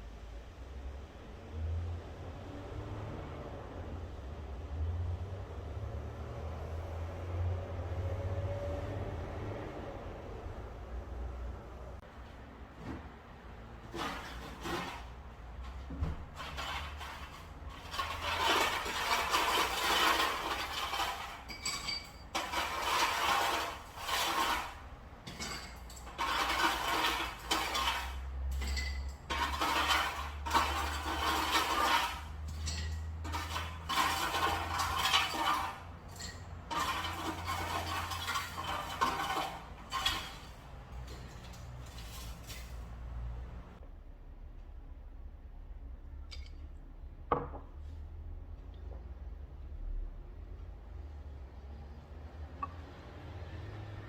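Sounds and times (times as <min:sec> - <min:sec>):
dishes clinking: 0:18.9 - 0:23.6, 0:25.3 - 0:41.5, 0:46.3 - 0:46.6.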